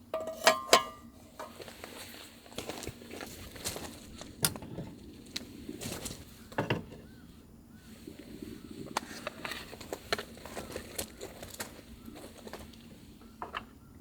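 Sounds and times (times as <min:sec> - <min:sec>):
camping gear clicks and knocks: 0:00.1 - 0:02.0, 0:02.6 - 0:06.9.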